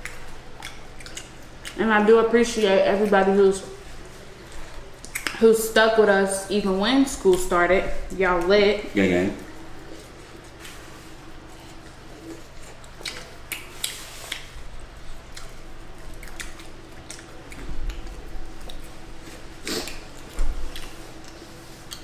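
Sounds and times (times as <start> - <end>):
chewing and mouth clicks: 0.0 - 1.9, 4.0 - 5.4, 9.4 - 22.0
steady low hum: 0.0 - 22.0.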